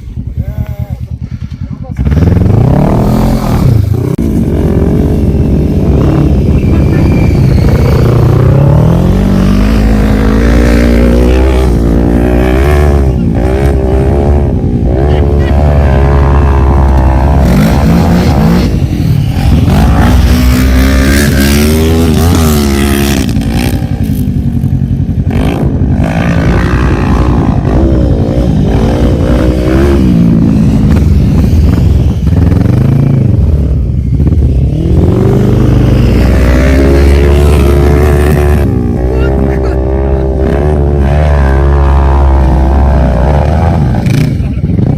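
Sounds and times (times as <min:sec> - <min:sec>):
atv engines revving: 0:00.0 - 0:44.9.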